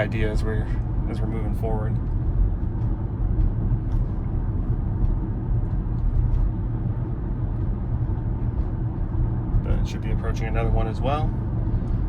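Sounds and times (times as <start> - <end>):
road and tyre rumble: 0.0 - 12.0.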